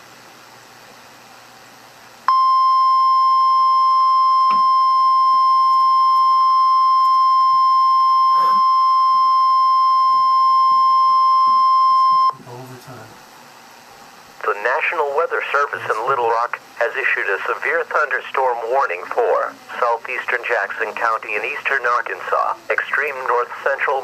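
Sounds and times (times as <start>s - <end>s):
steady alarm tone: 2.3s - 12.4s.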